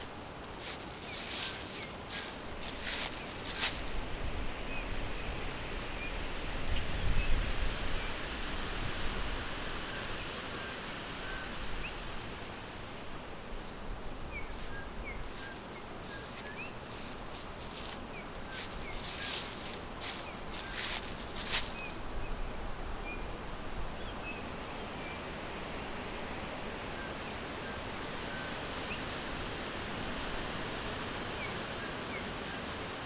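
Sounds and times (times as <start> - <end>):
rustling: 0.0 - 4.2, 12.8 - 22.3.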